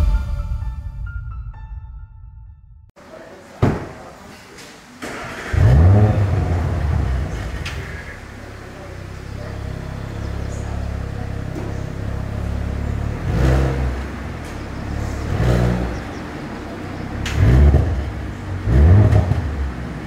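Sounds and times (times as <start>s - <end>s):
car engine idling and revving: 5.0s - 20.0s.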